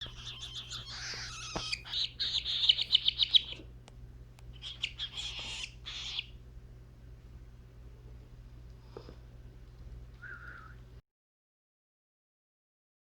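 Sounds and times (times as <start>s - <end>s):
bird chick begging calls: 0.0s - 3.7s, 4.5s - 6.4s.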